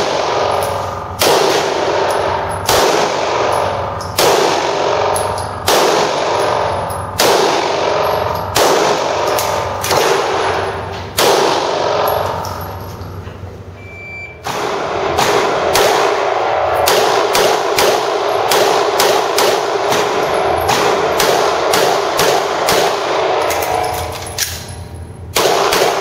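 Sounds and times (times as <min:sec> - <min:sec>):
pistol shots: 0:00.0 - 0:12.6, 0:14.4 - 0:24.6, 0:25.3 - 0:26.0
shot timer beep: 0:13.8 - 0:14.4.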